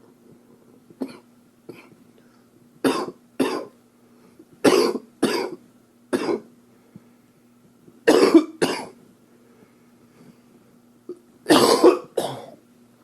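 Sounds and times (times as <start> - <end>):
man coughing: 2.9 - 3.7, 4.6 - 6.5, 8.1 - 9.0, 11.5 - 12.6.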